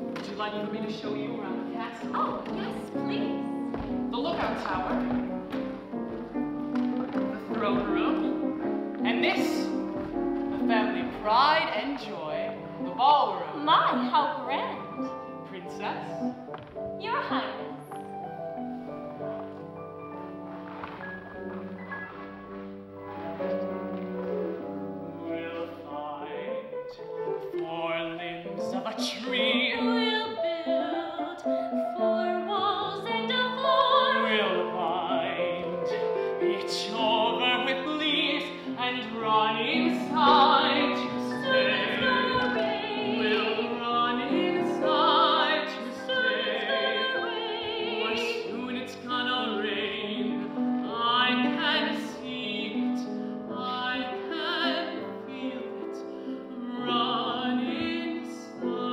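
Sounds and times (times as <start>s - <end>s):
piano accompaniment: 0.0s - 58.9s
wordless vibrato singing: 24.4s - 58.9s.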